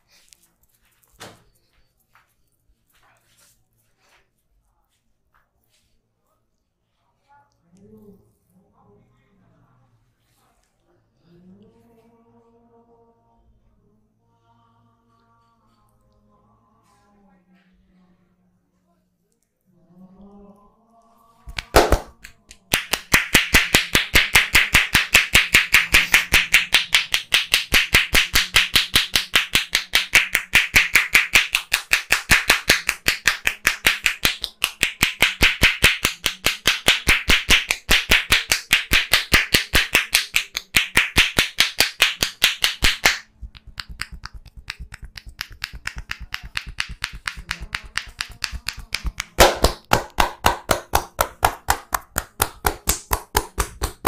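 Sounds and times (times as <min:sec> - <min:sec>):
hands slapping head: 0:21.5 - 0:54.0.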